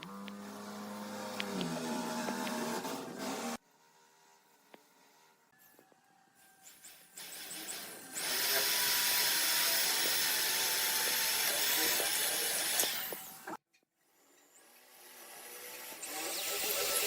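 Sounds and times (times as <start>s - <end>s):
power tool working wood: 0.0s - 3.6s, 7.4s - 13.6s.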